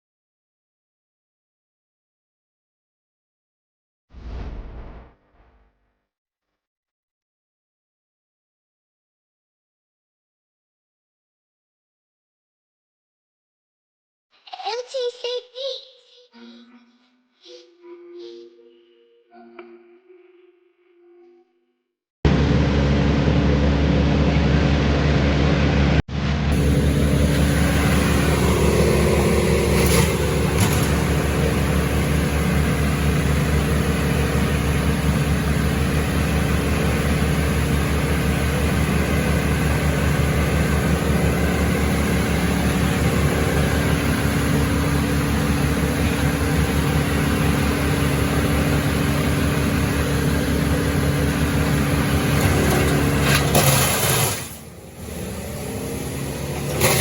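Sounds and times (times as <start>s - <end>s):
wood chipper chipping brush: 26.2s - 57.0s.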